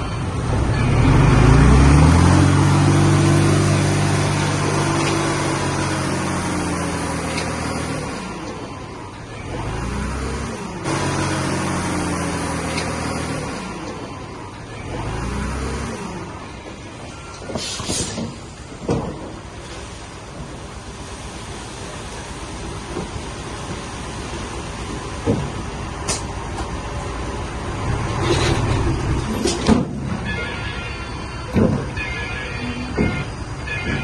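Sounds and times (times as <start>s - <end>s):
heavy diesel engine revving: 0.2s - 16.6s, 24.4s - 30.3s.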